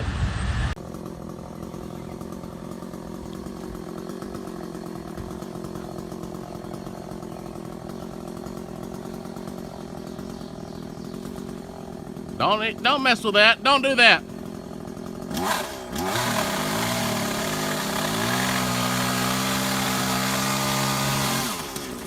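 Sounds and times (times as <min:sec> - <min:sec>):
chainsaw engine running: 0:00.7 - 0:22.0.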